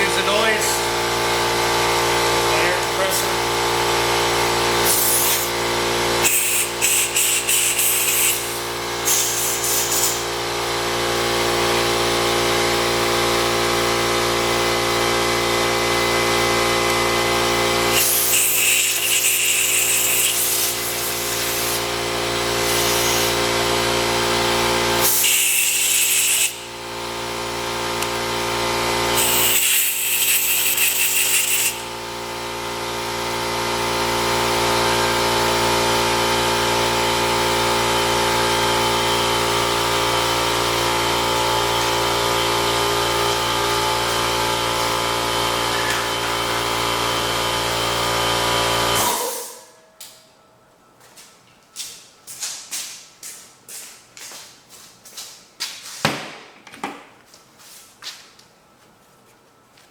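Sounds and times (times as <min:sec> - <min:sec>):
steady machine hum: 0:00.0 - 0:51.1
high-pitched power tool bursts: 0:02.9 - 0:10.6, 0:17.0 - 0:49.7.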